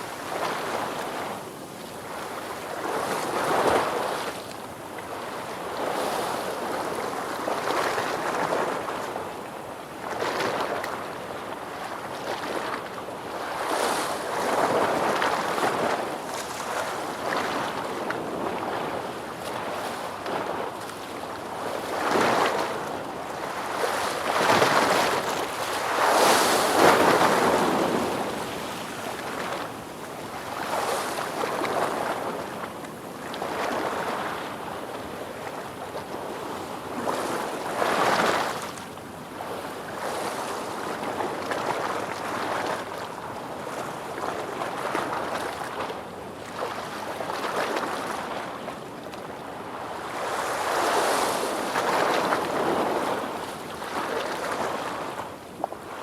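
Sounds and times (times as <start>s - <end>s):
ocean waves surf: 21.8s - 32.6s, 50.0s - 55.2s.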